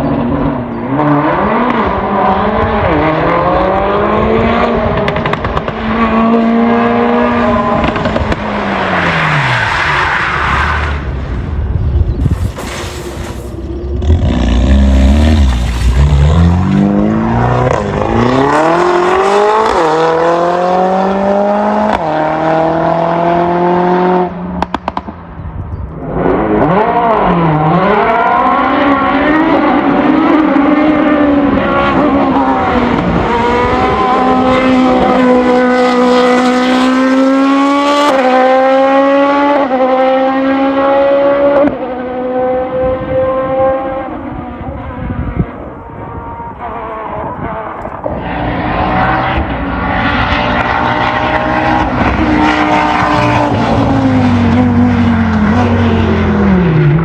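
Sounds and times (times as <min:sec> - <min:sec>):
race car engine accelerating: 0:13.8 - 0:25.1, 0:26.0 - 0:57.0.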